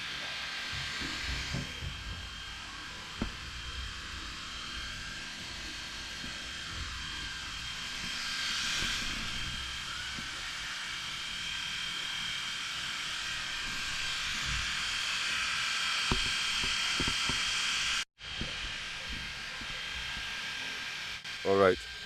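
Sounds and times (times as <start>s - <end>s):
fan hiss: 0.0s - 22.0s
thin high whine: 0.0s - 22.0s
soft knocks: 16.1s - 17.4s.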